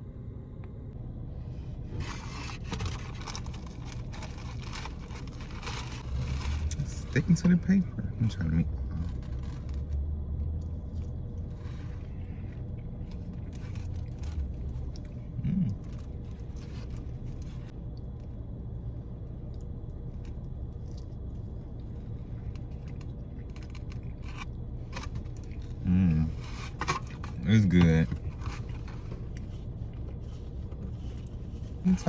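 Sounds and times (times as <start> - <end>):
low rumble: 0.0 - 32.0
person humming: 15.4 - 15.8.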